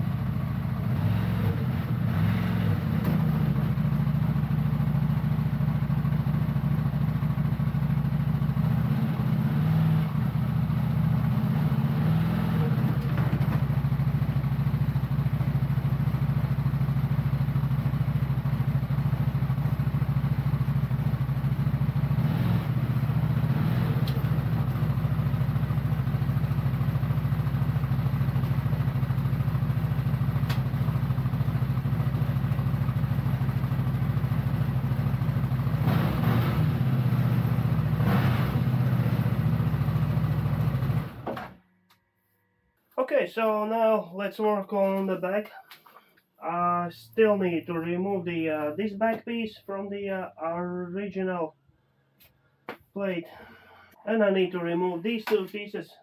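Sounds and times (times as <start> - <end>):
atv engine running: 0.0 - 41.6.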